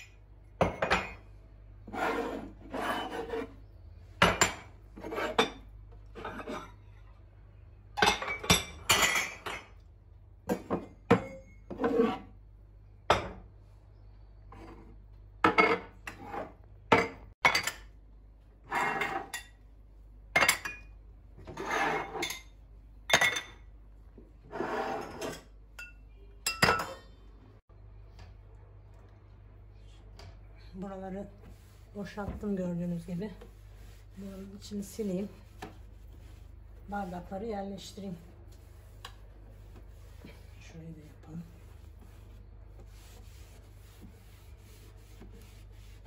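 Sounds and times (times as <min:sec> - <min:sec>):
dishes clinking and knocking: 0:00.0 - 0:01.3, 0:04.2 - 0:06.9, 0:08.0 - 0:12.3, 0:13.0 - 0:13.5, 0:14.6 - 0:18.0, 0:20.3 - 0:23.7, 0:24.6 - 0:27.2
items scraping on a shelf: 0:01.8 - 0:03.6, 0:04.9 - 0:06.9, 0:11.6 - 0:12.4, 0:14.5 - 0:15.0, 0:15.7 - 0:16.6, 0:18.6 - 0:19.3, 0:21.4 - 0:22.3, 0:24.4 - 0:25.5.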